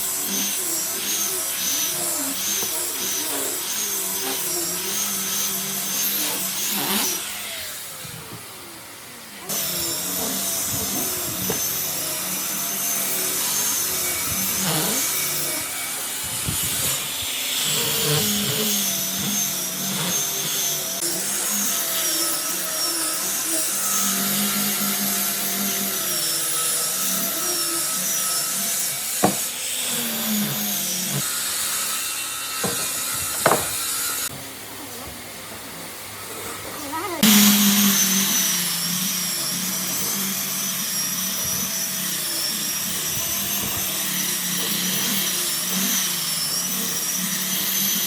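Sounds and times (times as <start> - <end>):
power tool motor whine: 0.0 - 34.6, 35.8 - 48.0
sharp knocks: 32.6 - 33.8.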